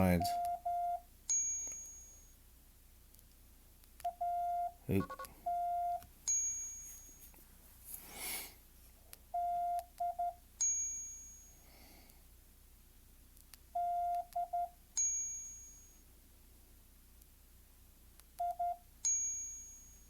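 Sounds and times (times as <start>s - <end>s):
morse code beeps: 0.0s - 1.0s, 4.1s - 6.0s, 9.3s - 10.3s
bell-like ding: 10.6s - 11.6s.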